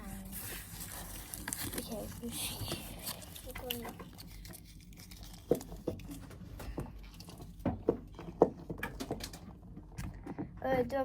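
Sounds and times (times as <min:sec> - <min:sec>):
small knocks and clicks: 0:05.4 - 0:10.6.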